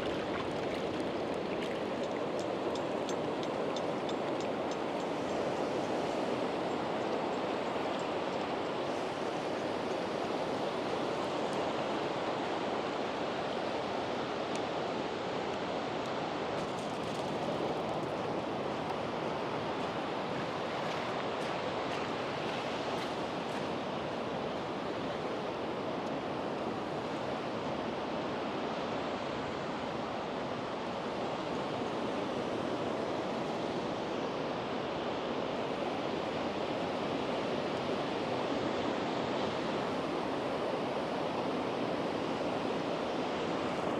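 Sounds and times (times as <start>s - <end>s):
sea surf washing onto beach: 0.0s - 43.9s.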